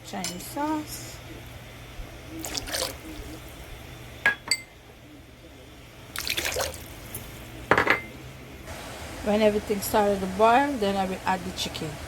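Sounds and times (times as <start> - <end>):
sauce pouring into water: 6.2 - 6.9.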